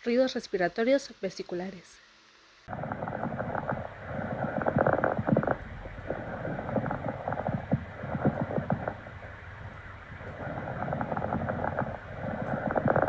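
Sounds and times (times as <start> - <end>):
breathing through a stethoscope: 2.7 - 13.0.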